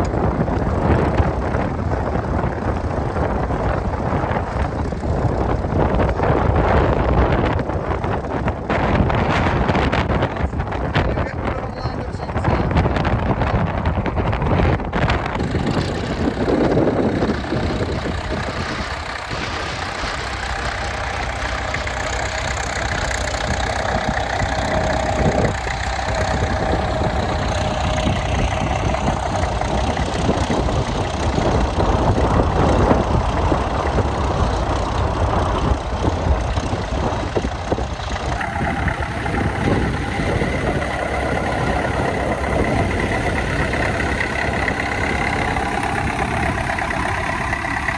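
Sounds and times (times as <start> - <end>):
tractor diesel engine running: 0.0 - 47.9
higher steady tone: 16.7 - 47.9.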